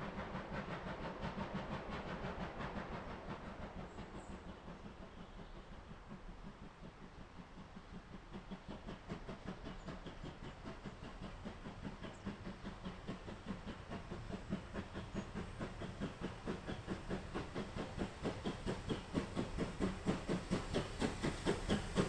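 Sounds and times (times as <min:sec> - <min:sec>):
steam hissing: 0:00.0 - 0:22.0
steam locomotive exhaust beats: 0:00.0 - 0:22.0.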